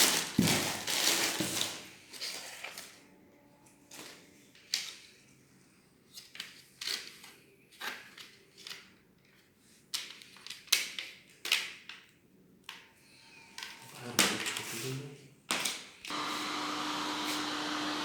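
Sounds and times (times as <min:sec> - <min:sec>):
packaging rustling and scraping: 0:00.0 - 0:03.0.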